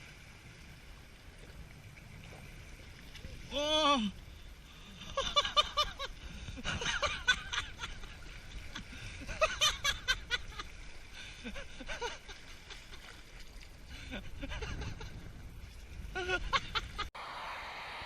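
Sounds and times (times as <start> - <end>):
man laughing: 5.1 - 8.2, 11.4 - 13.0, 14.0 - 15.2, 16.1 - 17.1.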